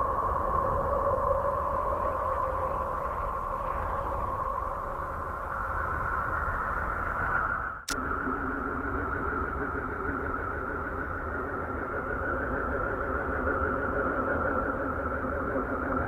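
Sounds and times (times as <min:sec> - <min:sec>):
noisy drone with low hum: 0:07.9 - 0:16.0.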